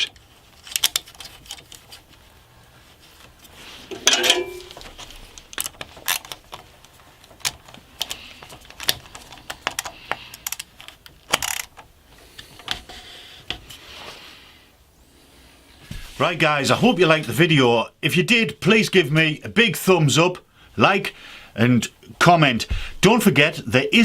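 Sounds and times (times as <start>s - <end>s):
clicks and knocks of wood and metal parts: 0.0s - 2.0s, 3.9s - 13.7s.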